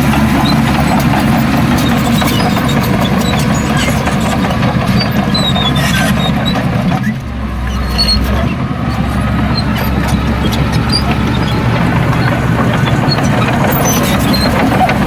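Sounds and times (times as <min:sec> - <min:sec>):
heavy diesel engine running: 0:00.0 - 0:15.0
clicks and clatter: 0:08.9 - 0:15.0.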